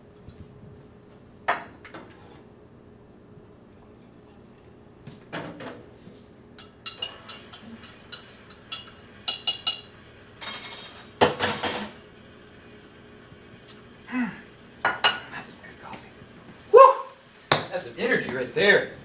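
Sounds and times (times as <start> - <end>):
dishes and cutlery clinking: 6.6 - 12.0
dishes rattling with ringing: 10.4 - 12.0.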